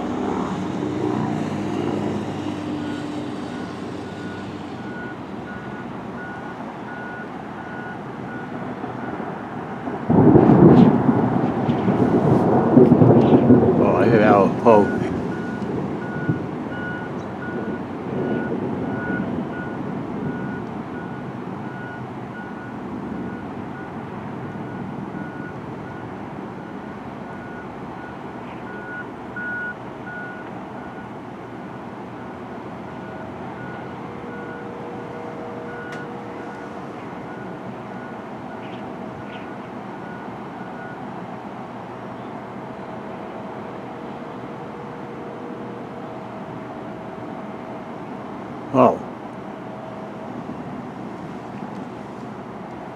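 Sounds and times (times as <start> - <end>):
reversing alarm beeping: 2.3 - 9.2, 14.6 - 31.1, 32.2 - 39.4, 40.0 - 41.1
thunder rumbling: 8.4 - 26.8.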